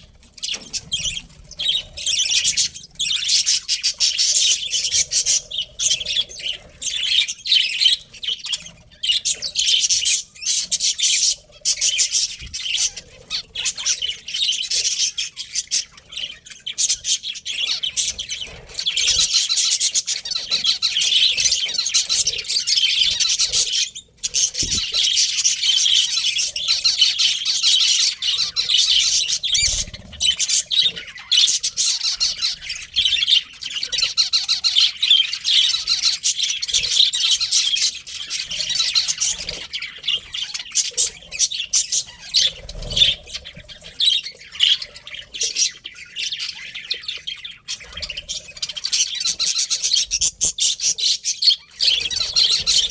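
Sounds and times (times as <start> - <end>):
flock of budgerigars chirping: 0.0 - 52.9.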